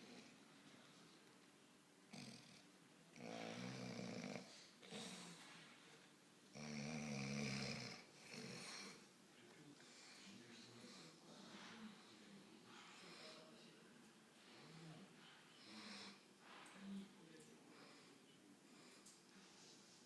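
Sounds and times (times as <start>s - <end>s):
faint breaths: 2.1s - 20.0s
man snoring: 3.2s - 4.5s, 6.6s - 9.0s.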